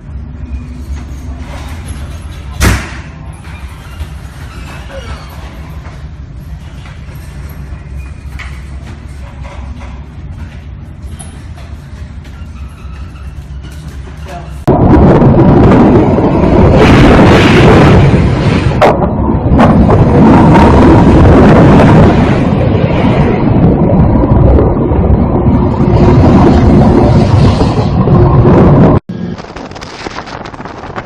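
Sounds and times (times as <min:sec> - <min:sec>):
wind buffeting microphone: 0:13.0 - 0:31.0.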